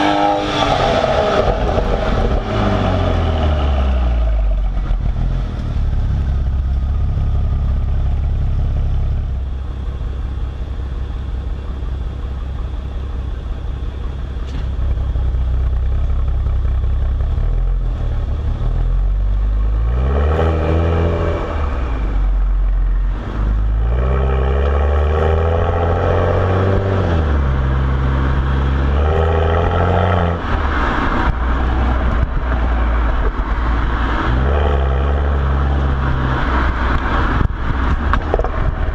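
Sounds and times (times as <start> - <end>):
car engine revving through gears: 0.0 - 8.3, 17.2 - 38.7.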